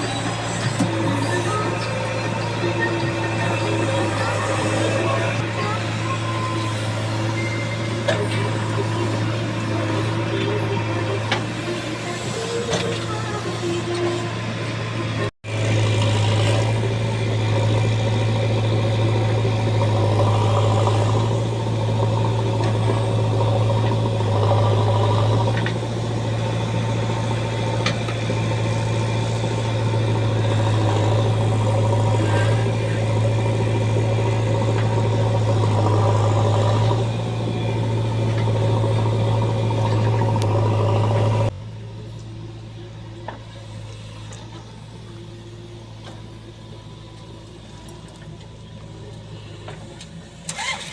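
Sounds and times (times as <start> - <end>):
heavy diesel engine running: 0.0 - 50.9.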